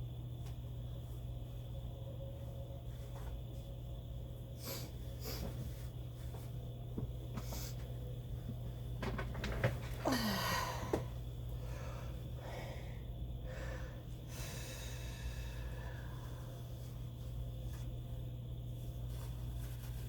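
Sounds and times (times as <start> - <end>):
person gasping: 10.0 - 11.1
faint breathing: 10.1 - 17.0.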